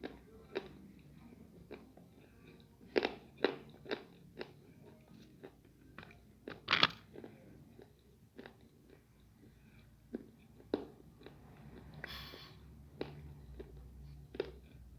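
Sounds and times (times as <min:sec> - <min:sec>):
crunchy food chewing: 0:01.6 - 0:12.3, 0:12.9 - 0:14.9.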